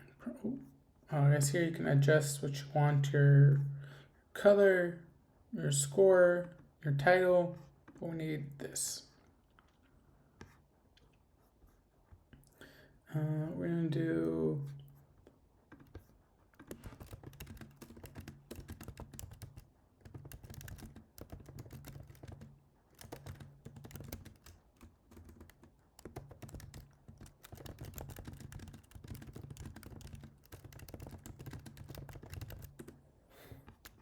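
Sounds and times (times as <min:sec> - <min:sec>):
computer keyboard typing: 0:15.7 - 0:33.0, 0:33.7 - 0:34.0.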